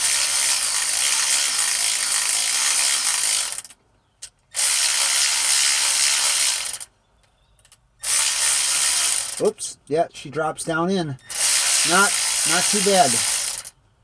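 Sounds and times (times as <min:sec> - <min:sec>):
ratchet clicking rapidly: 0:00.0 - 0:03.8, 0:04.5 - 0:06.9, 0:08.0 - 0:09.5, 0:11.2 - 0:13.7.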